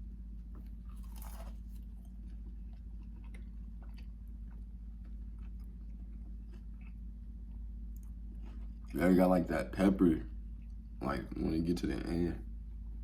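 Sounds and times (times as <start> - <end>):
low hum: 0.0 - 13.0
chewing fried food: 0.3 - 9.4.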